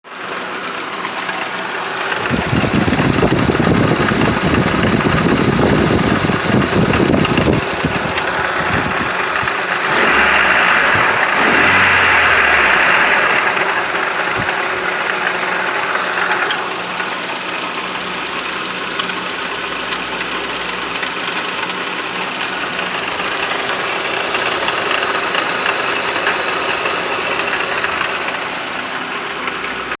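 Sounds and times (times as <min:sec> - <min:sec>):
car engine running: 0:00.1 - 0:30.0
loud high engine noise: 0:00.3 - 0:19.1.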